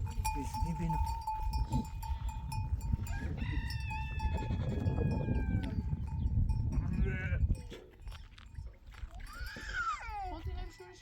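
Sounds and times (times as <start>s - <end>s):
rooster crowing: 3.1s - 5.6s.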